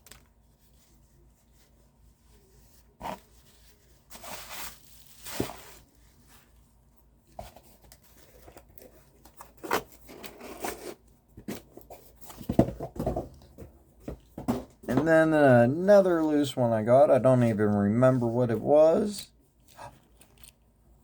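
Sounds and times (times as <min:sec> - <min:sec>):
packaging crinkling and tearing: 0:19.6 - 0:20.6.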